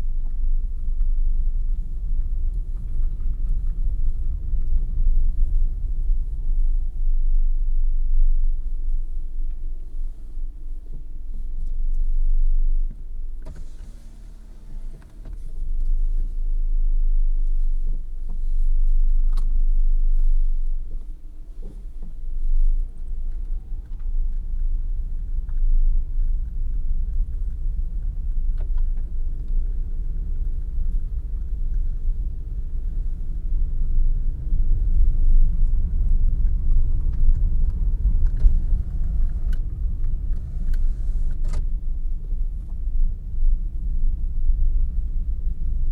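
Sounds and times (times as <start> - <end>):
car road and engine rumble: 0.0 - 45.9.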